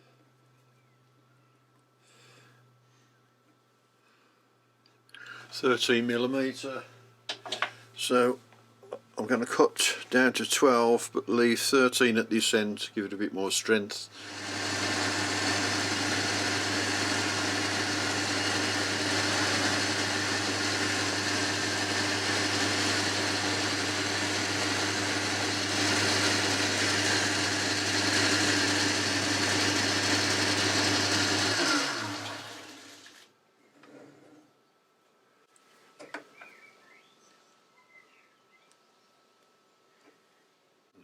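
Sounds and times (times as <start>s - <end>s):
lathe running: 14.2s - 33.3s.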